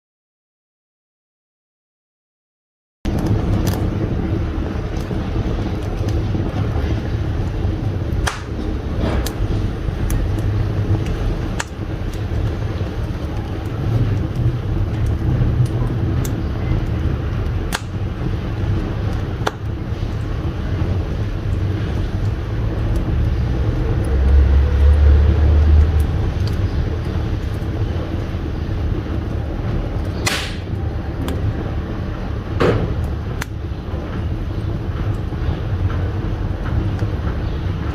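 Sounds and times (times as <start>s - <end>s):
fire crackling and popping: 3.1s - 37.9s
fire roaring in a stove: 3.1s - 37.9s.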